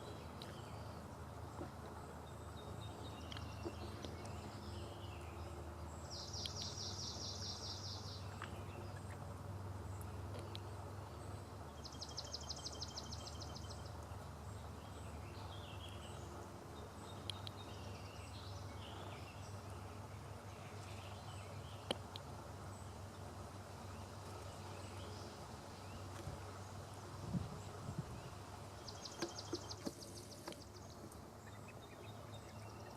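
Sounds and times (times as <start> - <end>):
low outdoor rumble: 0.0 - 32.9
bird trills and chirps: 27.6 - 32.9.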